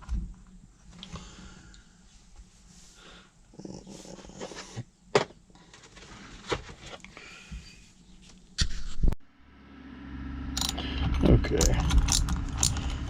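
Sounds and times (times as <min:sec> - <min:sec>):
sharp metal clicks: 0:10.6 - 0:13.0.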